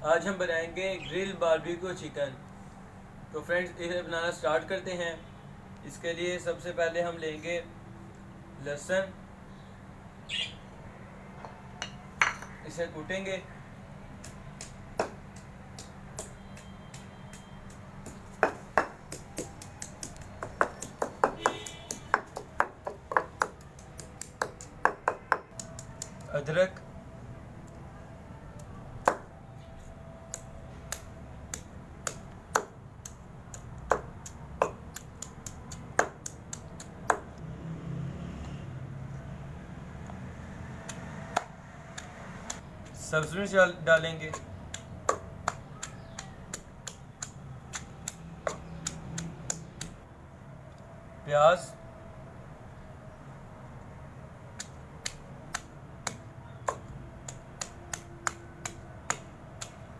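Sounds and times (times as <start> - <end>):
sharp kitchen taps: 14.2 - 26.3, 30.3 - 37.3, 40.9 - 50.0.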